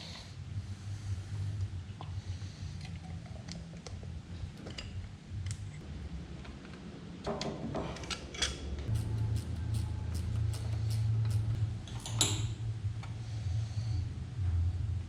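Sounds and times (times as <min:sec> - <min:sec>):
low hum: 0:08.6 - 0:15.0
metal scrape or rattle: 0:08.9 - 0:12.6.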